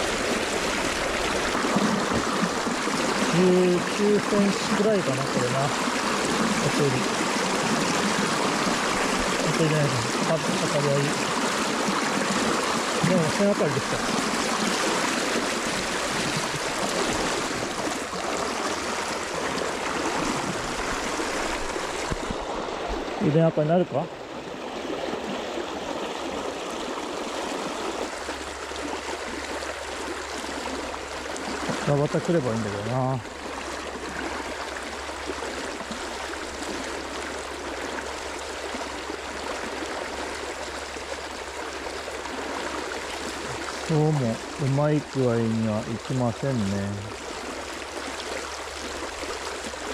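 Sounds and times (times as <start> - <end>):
river water rushing: 0.0 - 49.9.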